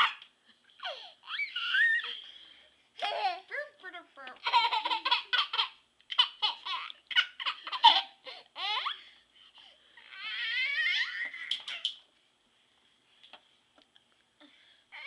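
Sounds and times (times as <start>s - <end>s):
baby squealing: 0.8s - 2.2s
baby giggling: 3.0s - 3.5s, 4.4s - 9.0s.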